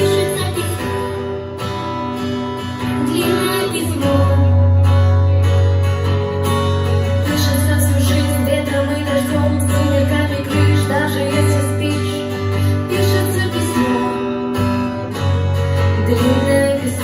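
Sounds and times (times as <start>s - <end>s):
person singing: 0.0s - 1.5s, 2.8s - 5.2s, 7.2s - 14.8s, 15.9s - 17.0s
acoustic guitar strumming: 0.0s - 17.0s.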